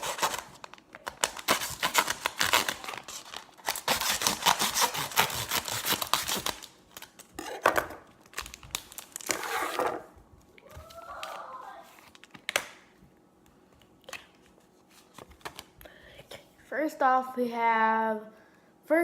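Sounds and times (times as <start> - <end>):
wrapper being torn open: 0.0 - 9.8.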